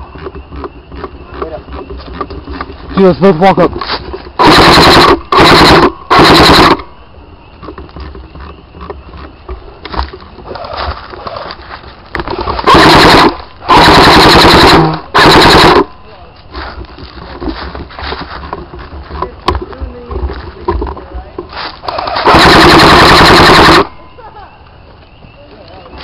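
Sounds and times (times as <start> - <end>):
airsoft gun full-auto bursts: 4.4 - 6.9, 12.6 - 15.9, 21.9 - 23.9.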